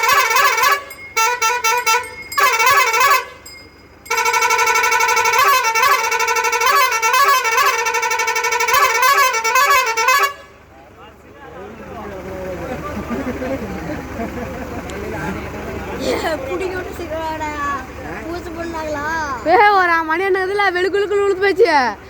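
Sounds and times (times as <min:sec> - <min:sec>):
bus musical horn tune: 0:00.0 - 0:10.7.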